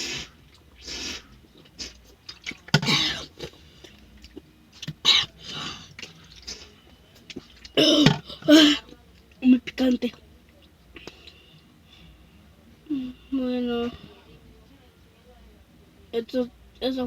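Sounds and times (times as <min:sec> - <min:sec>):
person clearing throat: 0:02.8 - 0:03.3, 0:05.0 - 0:05.8, 0:07.8 - 0:08.9.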